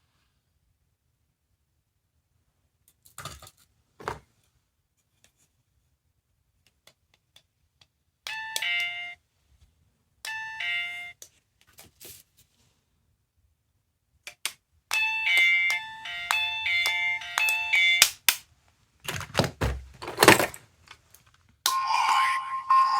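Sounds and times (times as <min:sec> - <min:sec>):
ding-dong doorbell chime: 0:08.3 - 0:09.2, 0:15.0 - 0:18.0
handling knocks: 0:19.1 - 0:20.6.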